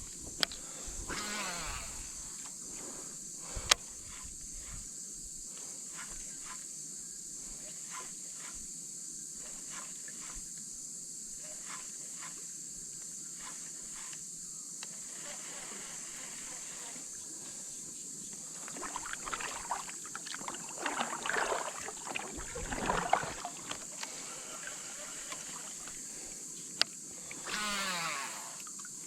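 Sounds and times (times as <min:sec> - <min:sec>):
faint ticks: 0:00.0 - 0:01.2, 0:03.5 - 0:04.9, 0:11.4 - 0:15.0, 0:23.6 - 0:27.6
high-pitched insect drone: 0:00.0 - 0:29.0.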